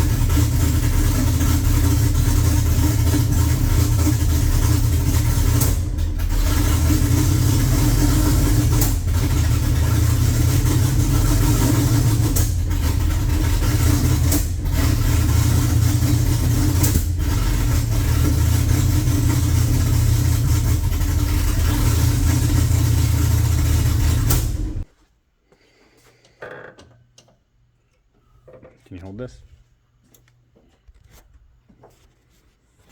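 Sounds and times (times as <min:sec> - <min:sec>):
engine running: 0:00.0 - 0:24.9.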